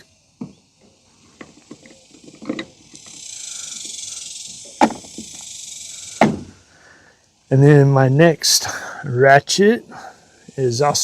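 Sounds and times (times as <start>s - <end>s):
tools clicking and knocking: 1.4s - 3.2s.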